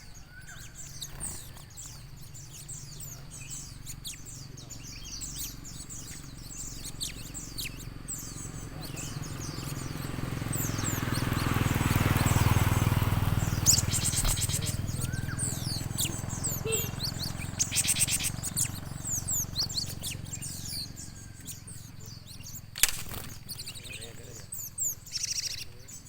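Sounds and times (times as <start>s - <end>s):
bird rattling trills: 0.0s - 26.0s
small birds chirping: 0.0s - 26.0s
sharp click: 22.7s - 23.7s.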